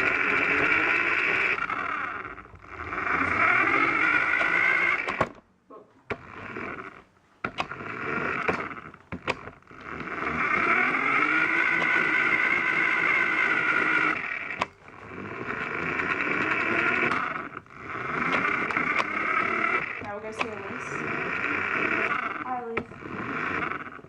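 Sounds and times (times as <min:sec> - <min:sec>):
toy car electric motor whining: 0:00.0 - 0:05.4, 0:06.1 - 0:24.0
toy car bumping knocks: 0:03.0 - 0:05.4, 0:06.1 - 0:14.8.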